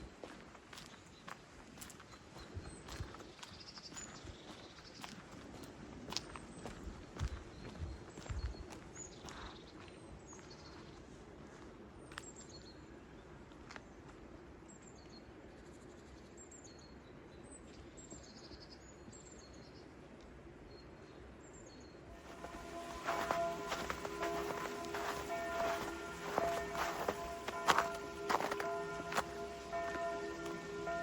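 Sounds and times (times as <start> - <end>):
faint outdoor ambience: 0.0 - 31.0
music: 22.2 - 31.0.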